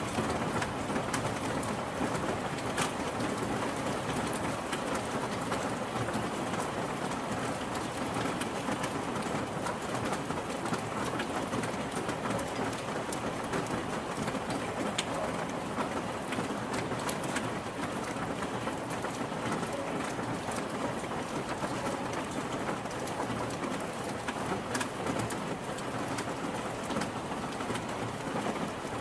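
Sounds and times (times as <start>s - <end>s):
steady rain: 0.0s - 29.0s.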